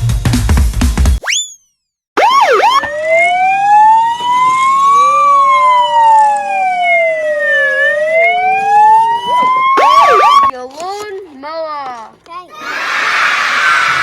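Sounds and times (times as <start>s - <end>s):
police siren wailing: 2.2s - 10.5s.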